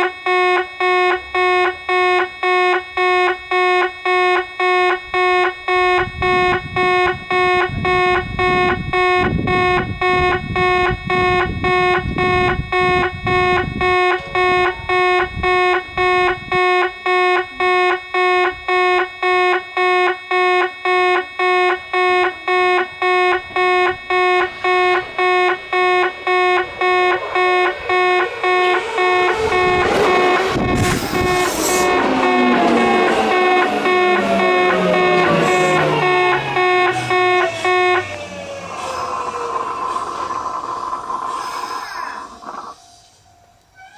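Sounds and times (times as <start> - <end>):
train motor whine: 5.1 - 19.6, 20.4 - 43.9
level crossing bell ringing: 12.9 - 17.6
train wheel and running noise: 23.4 - 43.8.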